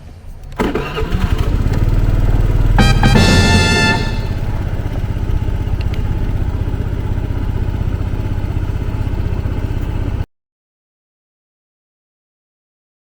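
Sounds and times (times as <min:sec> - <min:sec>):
scooter engine idling: 0:00.2 - 0:10.3.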